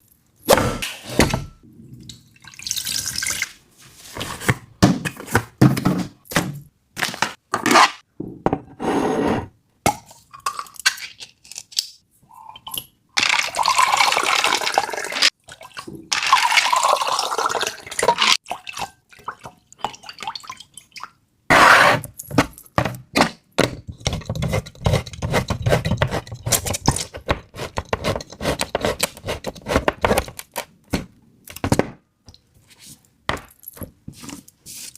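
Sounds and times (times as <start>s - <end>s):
liquid pouring and dripping: 2.0s - 3.6s.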